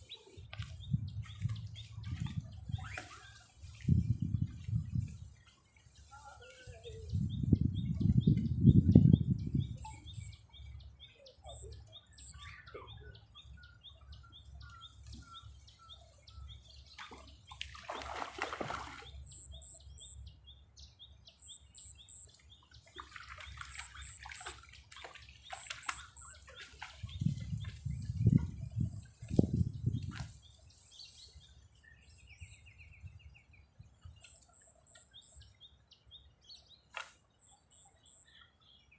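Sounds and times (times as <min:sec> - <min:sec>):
wind buffeting microphone: 0:00.0 - 0:05.4, 0:06.6 - 0:10.7, 0:26.9 - 0:31.6
small birds chirping: 0:00.0 - 0:38.9.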